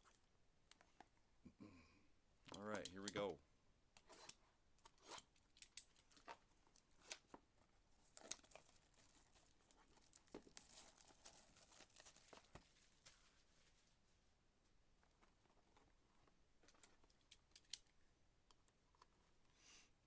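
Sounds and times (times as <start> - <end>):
small clicks and taps: 0.0 - 1.1
plastic wrapping tearing and crinkling: 8.0 - 13.2.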